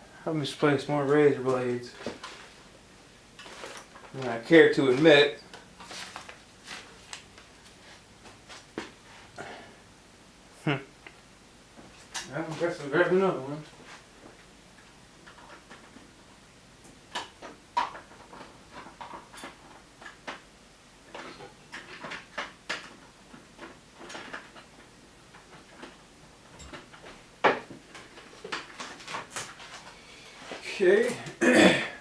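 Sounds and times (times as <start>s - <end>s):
objects rattling in tool drawers: 21.1s - 29.8s.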